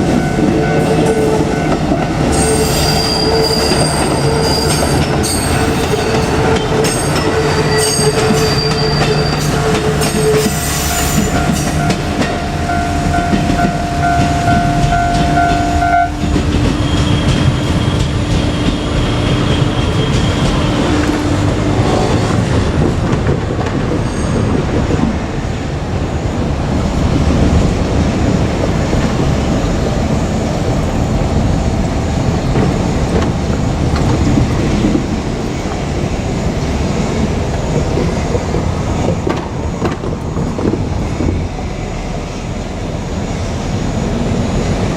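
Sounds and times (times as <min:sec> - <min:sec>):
diesel railcar engine: 0:00.0 - 0:44.9
steady tone: 0:09.4 - 0:16.4.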